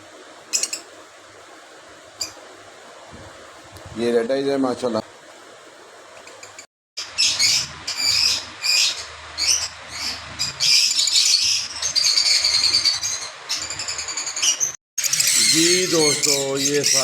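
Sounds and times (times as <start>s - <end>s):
lovebirds chirping: 6.4s - 17.0s.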